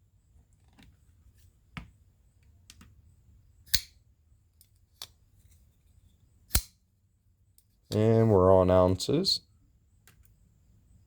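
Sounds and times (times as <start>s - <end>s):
sharp clicks of knife and scale: 6.5s - 6.8s.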